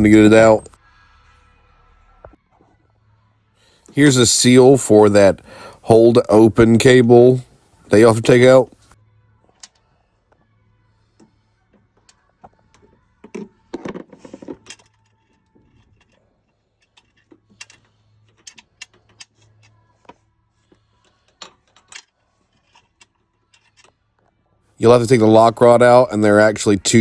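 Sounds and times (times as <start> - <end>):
hand tools clicking and rattling: 13.2 - 16.2, 16.8 - 19.8, 21.0 - 24.0.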